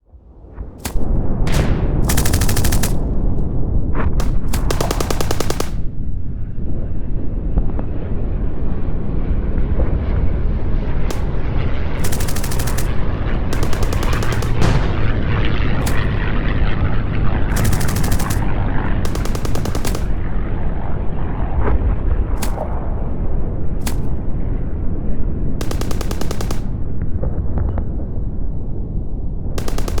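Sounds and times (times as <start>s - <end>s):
distant shooting rumble: 0.6s - 6.9s, 9.5s - 27.9s, 29.5s - 30.0s
machine-gun fire bursts: 0.8s - 3.3s, 4.2s - 6.0s, 11.1s - 16.4s, 17.5s - 20.4s, 22.4s - 22.8s, 23.8s - 24.2s, 25.6s - 26.8s, 29.6s - 30.0s
single gunshots: 0.8s - 3.3s, 4.2s - 6.0s, 11.1s - 16.8s, 17.5s - 20.5s, 22.4s - 22.9s, 23.8s - 24.2s.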